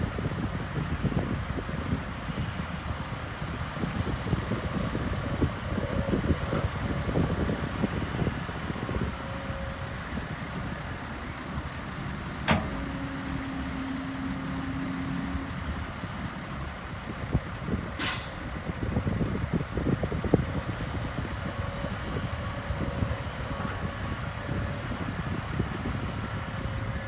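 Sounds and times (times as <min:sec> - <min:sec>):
diesel earthmoving machinery running: 0:00.0 - 0:27.0
low knocks and clanks: 0:12.3 - 0:13.4
sharp click: 0:12.4 - 0:12.8.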